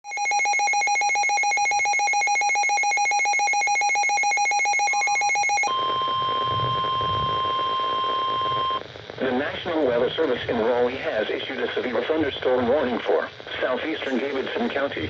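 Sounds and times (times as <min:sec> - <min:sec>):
long steady alert tone: 0:00.1 - 0:08.8.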